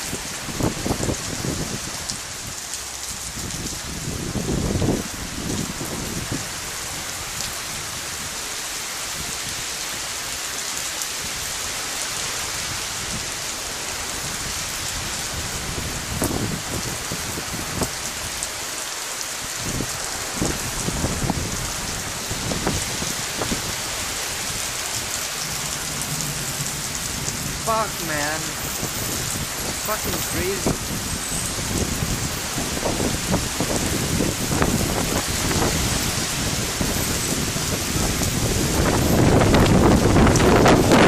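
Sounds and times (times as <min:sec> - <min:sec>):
heavy rain: 0:00.0 - 0:41.0
low thunder rumbles: 0:24.4 - 0:27.7, 0:30.6 - 0:41.0.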